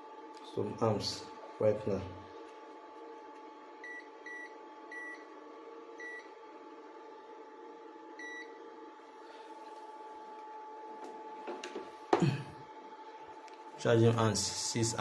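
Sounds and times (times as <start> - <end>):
steady electrical hum: 0.0 - 15.0.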